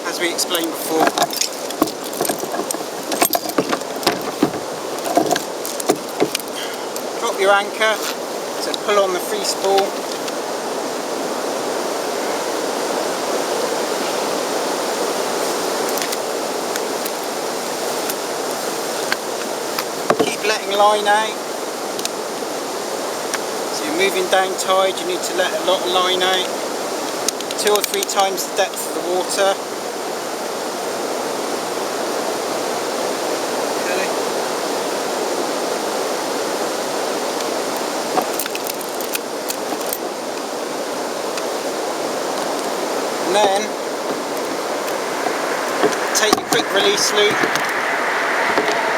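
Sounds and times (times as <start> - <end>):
sea water rushing around kayak: 0.0 - 48.9
gear clicking and tapping: 0.6 - 6.6.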